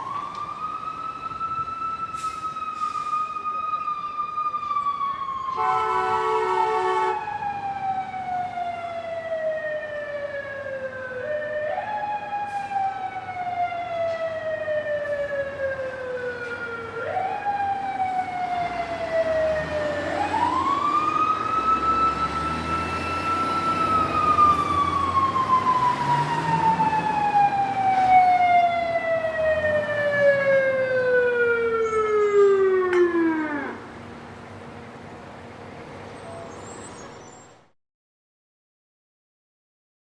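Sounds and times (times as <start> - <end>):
fire engine siren wailing: 0.0 - 35.1
fire engine horn blast: 5.6 - 7.3.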